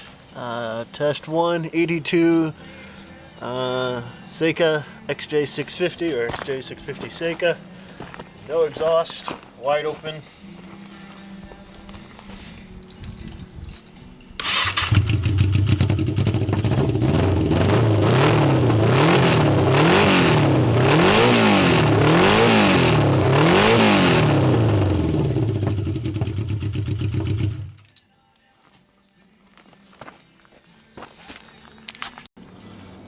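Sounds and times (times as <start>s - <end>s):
motorcycle engine idling and revving: 14.4s - 27.9s.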